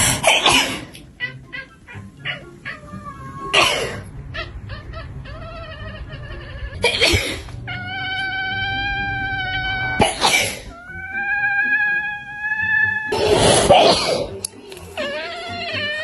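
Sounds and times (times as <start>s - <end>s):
cat meowing: 1.2s - 16.0s
person sneezing: 10.0s - 10.7s.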